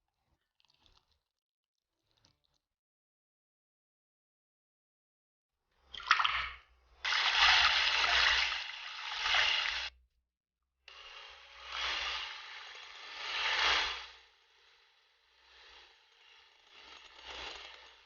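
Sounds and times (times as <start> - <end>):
liquid splashing and sloshing: 6.0 - 9.9.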